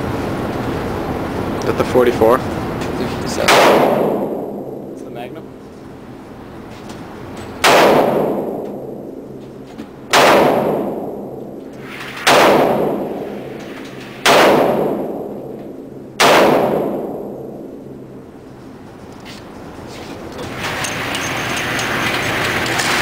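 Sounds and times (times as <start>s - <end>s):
handgun shots echoing: 3.4s - 4.4s, 7.6s - 8.8s, 10.1s - 11.2s, 12.0s - 13.3s, 13.9s - 15.3s, 16.2s - 17.5s.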